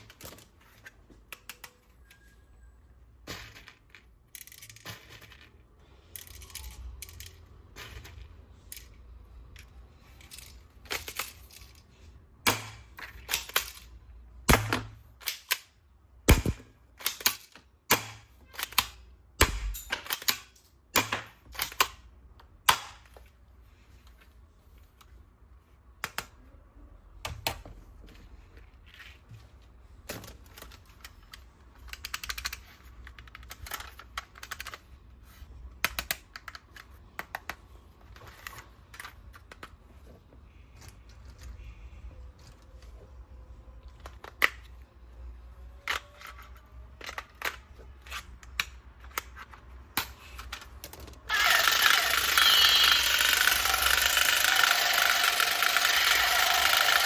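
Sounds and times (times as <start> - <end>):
plastic toy parts clicking: 0.0 - 2.3, 3.5 - 11.9, 12.5 - 14.0, 14.8 - 23.2, 30.0 - 35.0, 35.7 - 39.8, 43.8 - 44.9, 45.6 - 57.0
loud mechanical rattle: 51.3 - 57.0.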